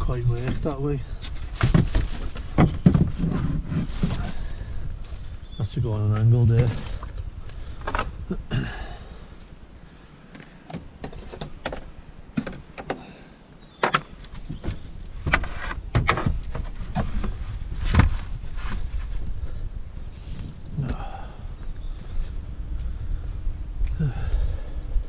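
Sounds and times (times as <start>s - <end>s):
junk knocking and scraping: 0.0s - 4.8s, 5.5s - 8.2s, 10.4s - 19.6s.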